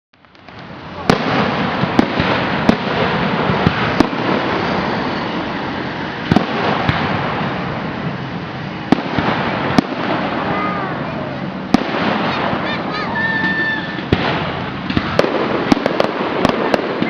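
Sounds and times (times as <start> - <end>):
dense wash of noise: 0.2 - 17.0
fireworks bursting bangs: 0.2 - 17.0.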